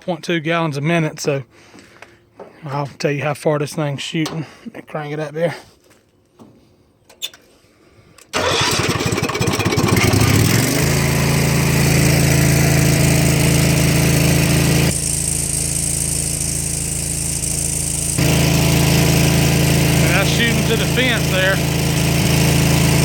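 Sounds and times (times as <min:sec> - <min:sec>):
pressure washer engine running: 0:08.4 - 0:23.0.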